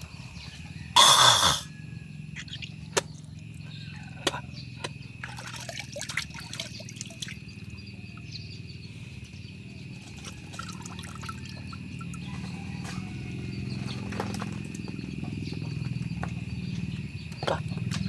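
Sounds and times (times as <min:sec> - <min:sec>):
garlic being chewed: 0:02.4 - 0:05.0, 0:17.3 - 0:18.0.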